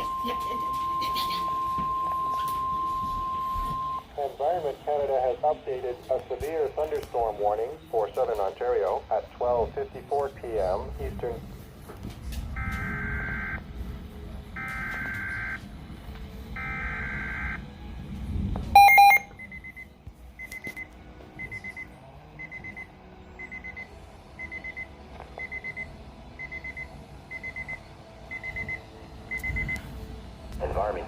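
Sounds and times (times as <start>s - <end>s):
radio alert beeping: 0.0s - 4.1s, 12.6s - 13.6s, 14.6s - 15.6s, 18.8s - 19.8s
loud short electronic tone: 18.8s - 19.4s.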